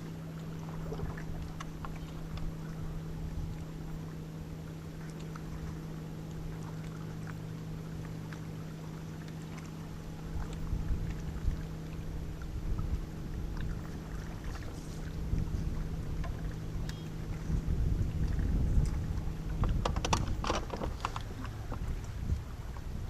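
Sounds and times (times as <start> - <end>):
boat motor humming: 0.0 - 23.0
wind rumbling on microphone: 10.0 - 23.0.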